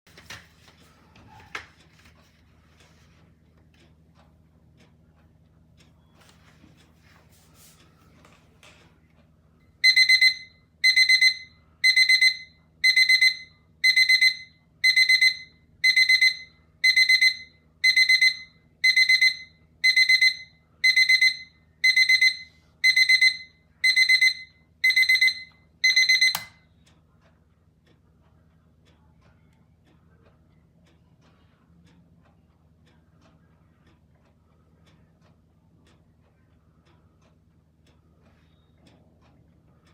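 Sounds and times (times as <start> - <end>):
alarm clock click: 9.8 - 26.6
alarm clock rapid beeps: 9.8 - 26.8.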